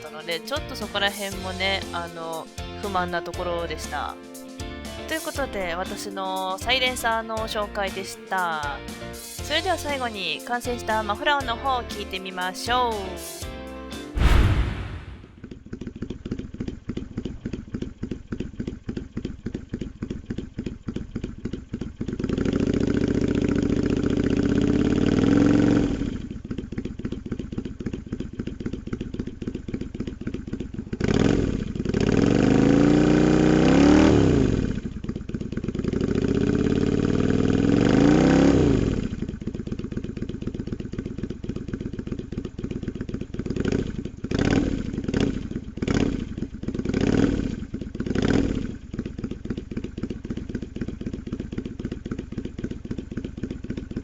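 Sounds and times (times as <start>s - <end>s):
motorcycle engine idling and revving: 0.0s - 54.0s.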